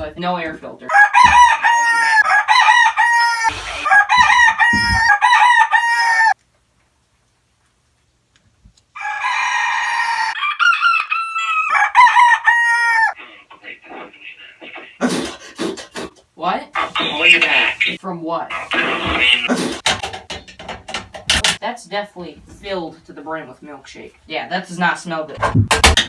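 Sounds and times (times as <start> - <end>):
rooster calling: 0.9 - 6.4, 9.0 - 13.3.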